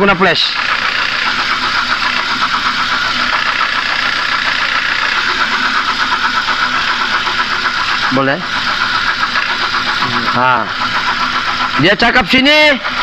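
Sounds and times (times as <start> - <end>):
car engine idling rough: 0.0 - 13.0.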